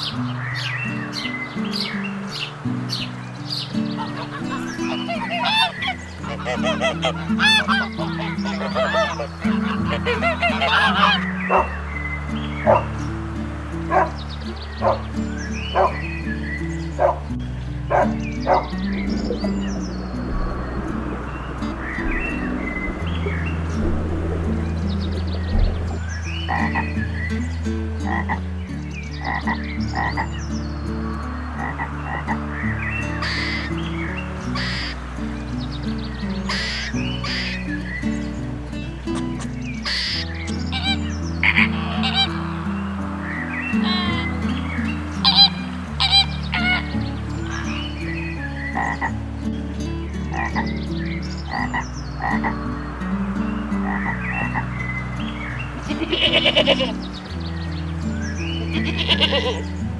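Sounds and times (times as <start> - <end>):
background music: 0.0 - 59.9
frogs croaking: 0.0 - 59.9
waterfowl honking: 3.6 - 13.0, 13.9 - 14.2, 31.6 - 38.2, 39.4 - 49.1, 55.8 - 57.1, 58.7 - 59.6.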